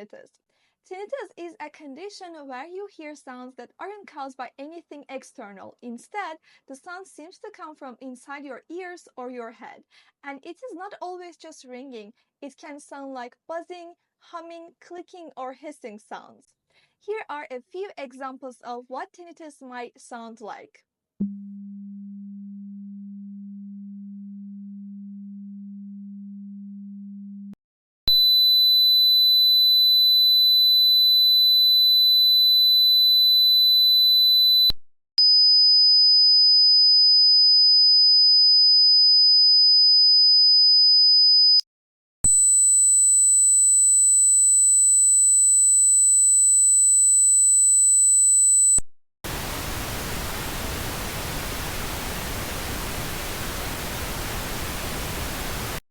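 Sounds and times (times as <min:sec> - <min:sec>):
faint low buzz: 0:49.3 - 0:55.8
steady hiss: 0:49.3 - 0:55.8.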